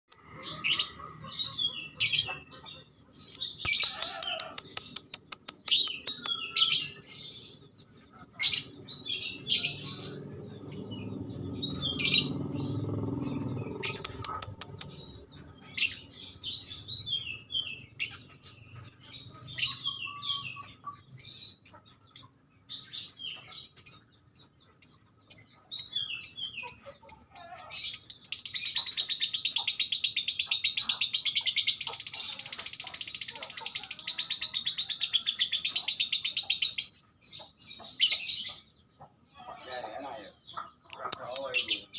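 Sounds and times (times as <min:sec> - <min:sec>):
songbird singing varied song: 0:00.1 - 0:41.9.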